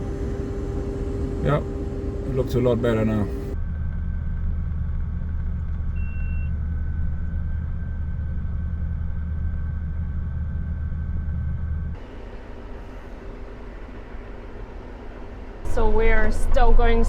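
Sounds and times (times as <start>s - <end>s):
combine harvester engine droning: 0.0s - 3.6s, 12.0s - 17.0s
quiet hum: 0.0s - 3.6s.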